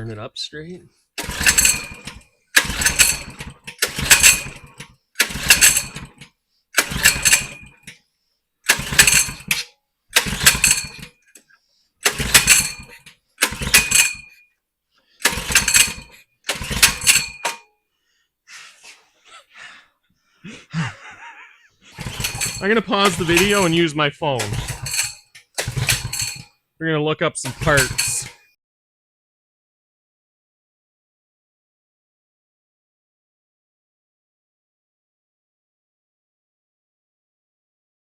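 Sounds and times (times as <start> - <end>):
small engine pull-start cranking: 1.2 - 8.0, 8.6 - 17.7, 21.9 - 26.6, 27.4 - 28.6.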